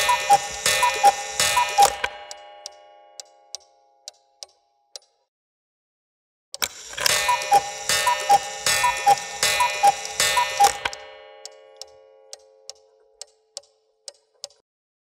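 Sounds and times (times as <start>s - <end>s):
cuckoo clock calling: 0.0s - 2.5s, 6.6s - 11.2s
clock ticking: 0.0s - 5.2s, 6.6s - 14.6s.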